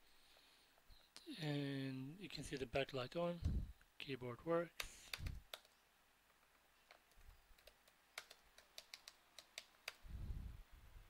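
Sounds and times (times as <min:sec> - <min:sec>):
faint keyboard clicks: 0:04.8 - 0:10.0.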